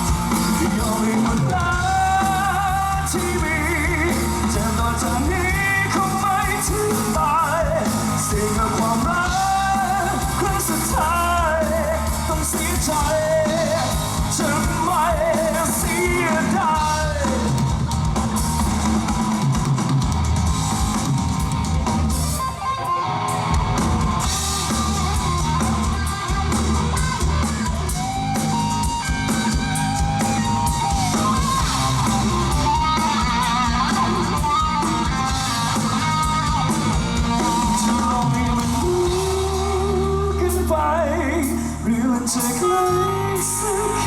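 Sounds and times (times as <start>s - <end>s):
drums: 0.0s - 44.0s
guitar melody: 16.8s - 40.0s.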